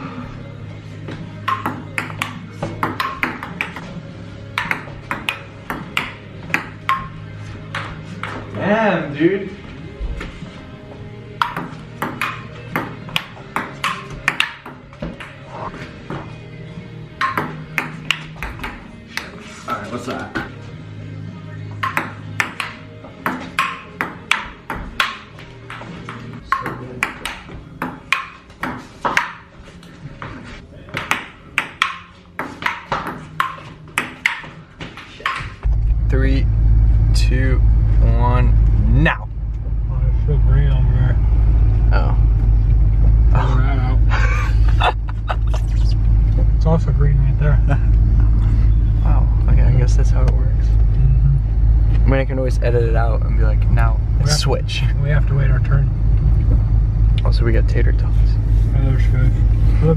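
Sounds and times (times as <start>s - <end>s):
ping pong ball hits: 1.4s - 3.9s, 4.5s - 8.5s, 11.4s - 15.4s, 17.2s - 19.3s, 21.8s - 29.5s, 30.9s - 35.7s.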